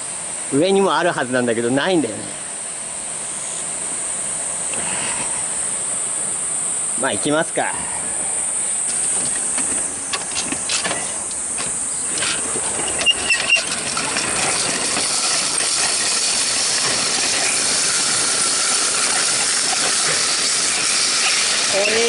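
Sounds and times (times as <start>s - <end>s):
short high squeaks: 10.2s - 22.0s.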